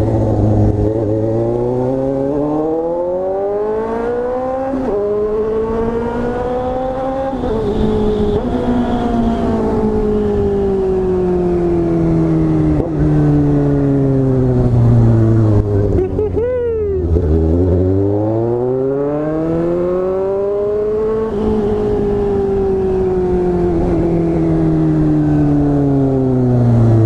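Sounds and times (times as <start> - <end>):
motorcycle engine revving: 0.0 - 27.0.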